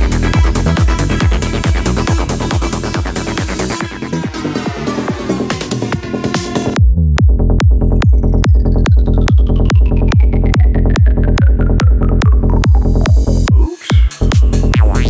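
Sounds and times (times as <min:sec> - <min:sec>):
falling synth sweep: 0:00.0 - 0:06.8
kick drum and bass: 0:00.0 - 0:15.0
trance dance music: 0:00.0 - 0:15.0.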